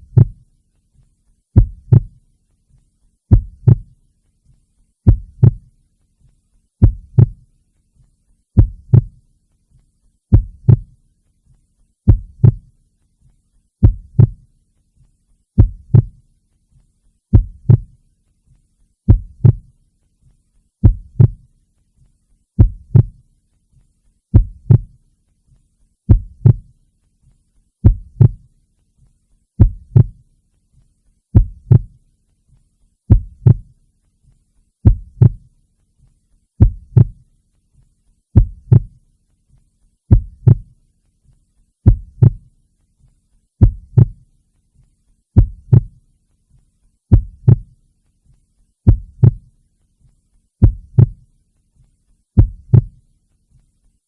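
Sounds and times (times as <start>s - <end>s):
slow heartbeat thumps: 0.0s - 0.5s, 1.6s - 2.2s, 3.3s - 4.0s, 5.0s - 5.7s, 6.8s - 7.5s, 8.6s - 9.2s, 10.3s - 11.0s, 12.1s - 12.7s, 13.8s - 14.5s, 15.6s - 16.2s, 17.3s - 18.0s, 19.1s - 19.8s, 20.8s - 21.5s, 22.6s - 23.2s, 24.3s - 25.0s, 26.1s - 26.8s, 27.8s - 28.5s, 29.6s - 30.2s, 31.3s - 32.0s, 33.1s - 33.8s, 34.8s - 35.5s, 36.6s - 37.3s, 38.4s - 39.0s, 40.1s - 40.8s, 41.8s - 42.5s, 43.6s - 44.3s, 45.4s - 46.0s, 47.1s - 47.8s, 48.8s - 49.5s, 50.6s - 51.3s, 52.4s - 53.0s.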